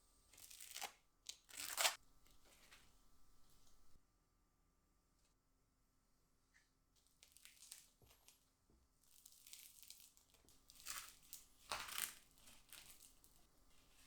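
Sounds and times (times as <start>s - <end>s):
sandwich crunching and crinkling: 0.4s - 3.9s, 7.2s - 8.4s, 9.0s - 14.0s.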